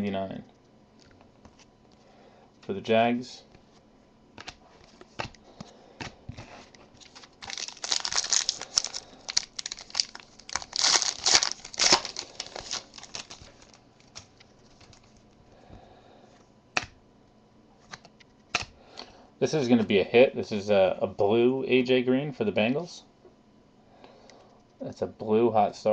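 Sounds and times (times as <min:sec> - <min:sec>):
foil wrapper tearing and crinkling: 0:07.0 - 0:15.2.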